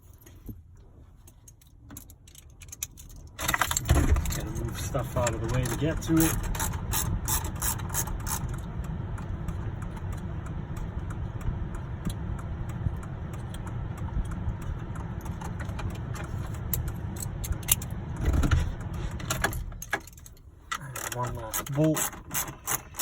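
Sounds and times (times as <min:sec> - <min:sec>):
pickup engine idling: 0:03.5 - 0:23.0
tools clicking and knocking: 0:19.3 - 0:23.0.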